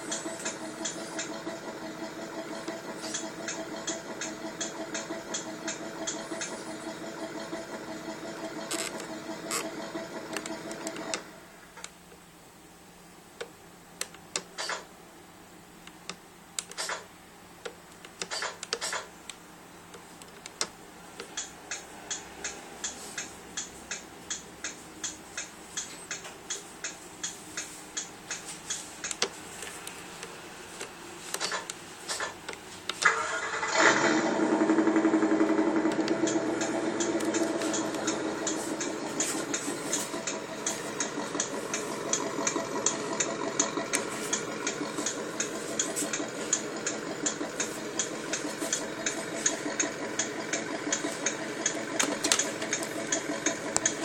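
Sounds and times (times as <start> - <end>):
vehicle engine running: 0.0 - 11.8, 20.8 - 54.0
sharp clicks ticking: 2.6 - 6.6, 35.8 - 54.0.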